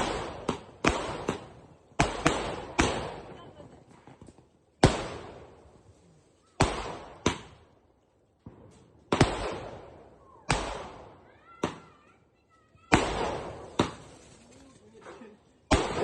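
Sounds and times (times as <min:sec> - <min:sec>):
firework crackling: 0:00.0 - 0:04.2
firework bangs: 0:00.0 - 0:05.8, 0:12.8 - 0:14.2, 0:15.6 - 0:16.0.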